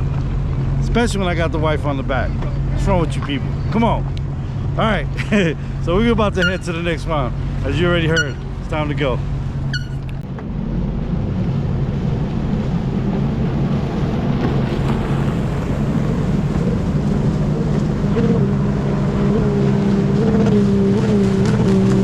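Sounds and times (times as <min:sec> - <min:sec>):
jet ski engine running: 0:00.0 - 0:22.0
wind: 0:00.0 - 0:22.0
water noise: 0:05.5 - 0:22.0.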